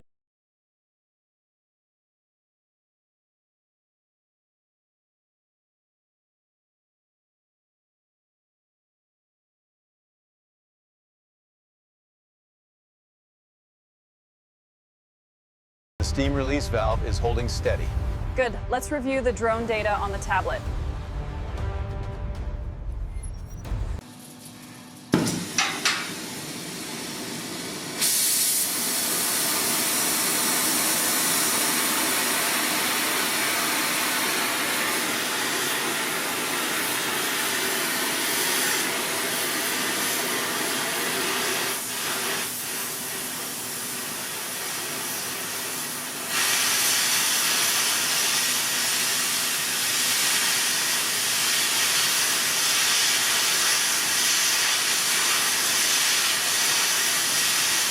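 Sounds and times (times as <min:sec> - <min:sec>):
steam venting hiss: 0:25.1 - 0:57.9.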